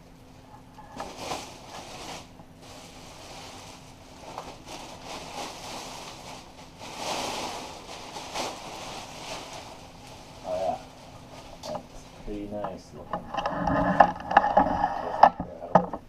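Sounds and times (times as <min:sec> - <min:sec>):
plastic packaging rustling: 0:00.3 - 0:16.0.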